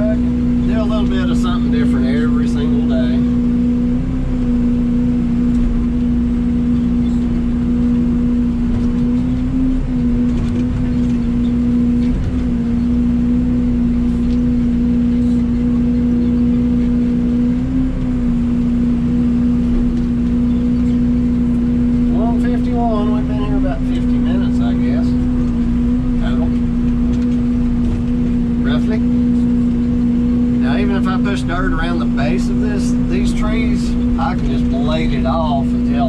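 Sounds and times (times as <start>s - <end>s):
excavator diesel engine running: 0.0s - 36.0s.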